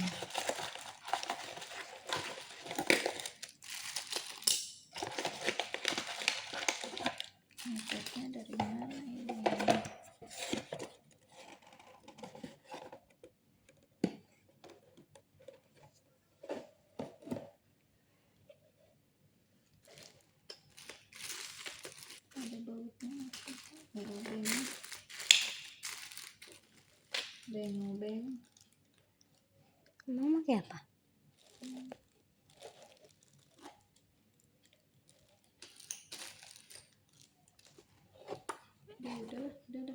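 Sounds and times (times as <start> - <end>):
rustling of packaging: 0.0 - 17.6, 19.6 - 29.8, 31.3 - 39.9.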